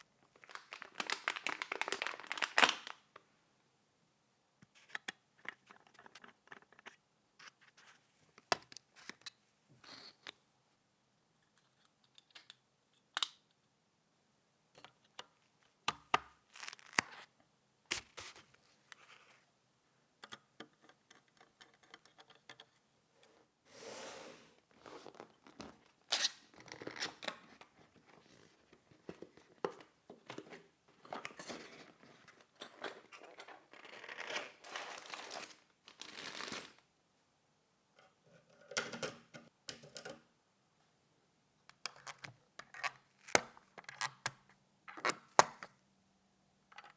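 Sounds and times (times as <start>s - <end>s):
wrappers rustling and tearing: 0.4s - 3.0s, 16.5s - 17.1s, 34.0s - 36.8s.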